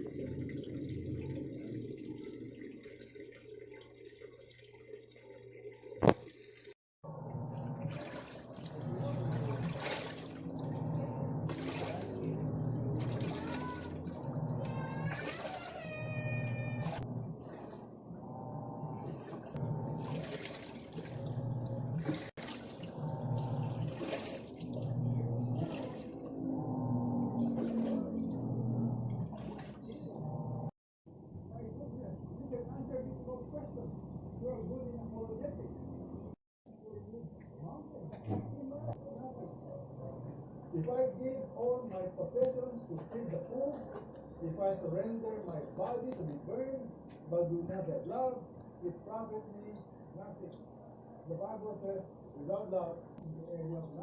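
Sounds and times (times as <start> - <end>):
washing machine taking in water: 0.0 - 30.7
faint hum: 7.1 - 22.3, 24.6 - 43.0.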